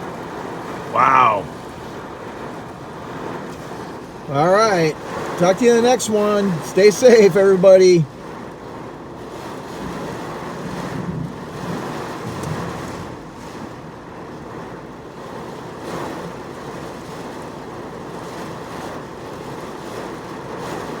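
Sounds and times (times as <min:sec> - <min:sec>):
heavy rain downpour: 0:00.0 - 0:21.0
gusting wind: 0:08.2 - 0:14.7.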